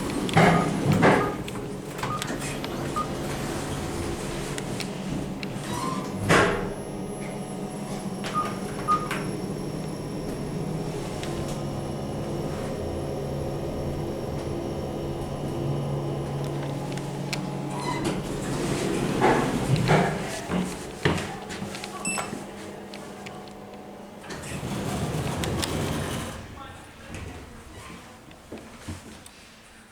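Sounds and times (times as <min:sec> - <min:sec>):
elevator hum: 0:00.0 - 0:29.3.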